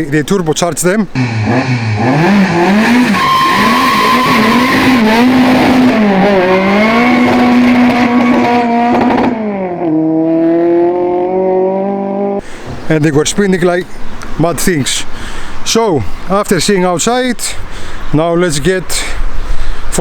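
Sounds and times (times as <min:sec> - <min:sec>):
tyre squeal: 0:01.2 - 0:07.3
car engine revving: 0:01.2 - 0:12.4.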